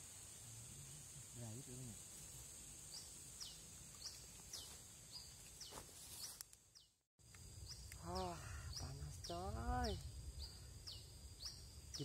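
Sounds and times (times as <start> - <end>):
high insect drone: 0.0 - 12.0
bird chirping: 2.8 - 12.0.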